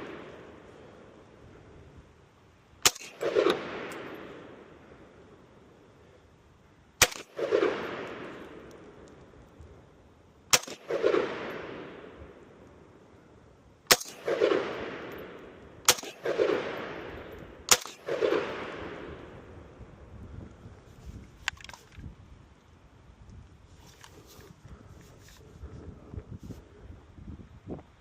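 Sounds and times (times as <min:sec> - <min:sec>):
rifle gunshots with rolling echo: 0:00.0 - 0:01.3, 0:02.8 - 0:05.8, 0:07.0 - 0:09.4, 0:10.5 - 0:19.8.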